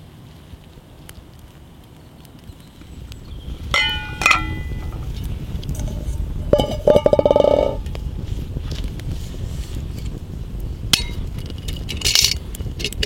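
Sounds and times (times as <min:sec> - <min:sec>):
metal clinking: 0:03.8 - 0:05.0.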